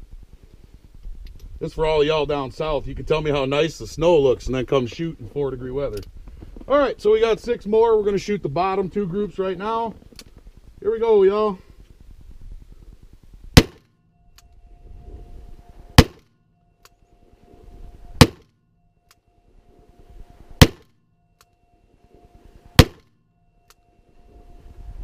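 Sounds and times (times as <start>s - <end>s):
revolver gunshots: 13.5s - 14.0s, 15.9s - 16.3s, 18.1s - 18.5s, 20.6s - 21.0s, 22.7s - 23.1s.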